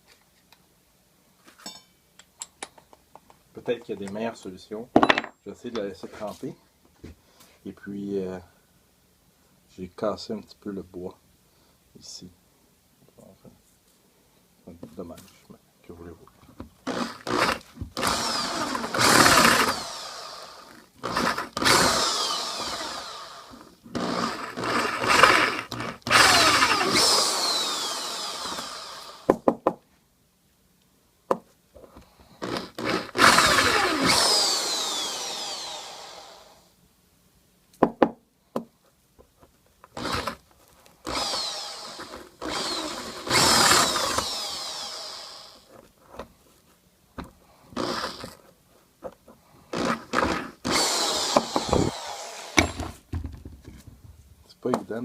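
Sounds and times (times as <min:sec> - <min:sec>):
electric drill whining: 0:16.9 - 0:29.3, 0:32.4 - 0:36.7, 0:40.0 - 0:40.4, 0:41.0 - 0:45.7, 0:47.8 - 0:48.4, 0:49.8 - 0:53.0.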